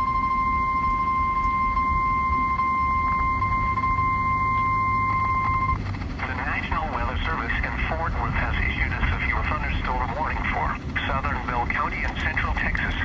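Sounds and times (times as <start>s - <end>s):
steady alarm beep: 0.0s - 5.8s
low rumble of radio static: 1.9s - 13.0s.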